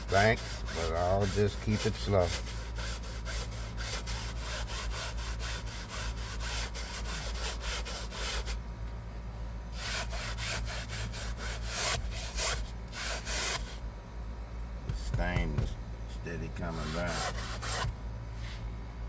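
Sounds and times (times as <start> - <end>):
hand brush scrubbing fabric seat: 0.0 - 2.6, 14.9 - 15.8, 16.6 - 18.6.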